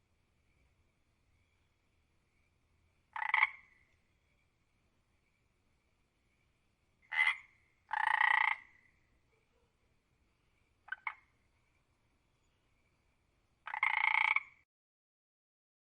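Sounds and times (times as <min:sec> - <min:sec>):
frog croaking: 0:03.1 - 0:03.9, 0:07.0 - 0:09.0, 0:10.8 - 0:11.4, 0:13.6 - 0:14.6.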